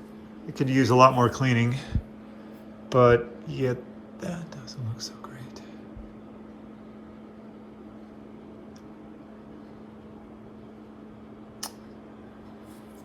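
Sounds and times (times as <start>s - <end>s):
steady background hum: 0.0s - 13.0s
sharp click: 11.6s - 11.8s.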